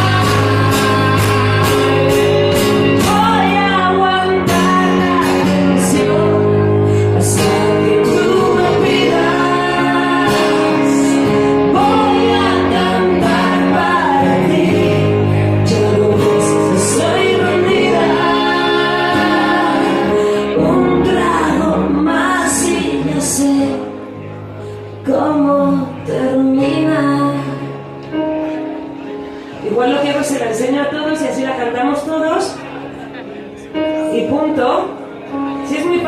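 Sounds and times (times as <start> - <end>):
person singing: 0.0 - 28.7
live pop-rock band: 0.0 - 36.0.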